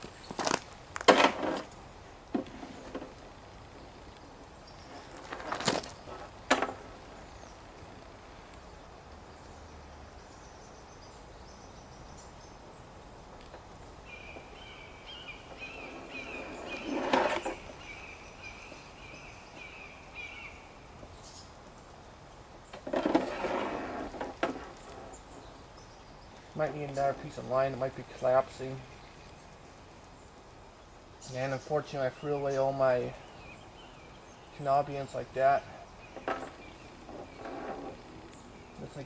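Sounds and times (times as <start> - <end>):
outdoor background noise: 0.0 - 39.0
handling knocks and clatters: 4.9 - 7.0
bird trilling: 14.1 - 20.7.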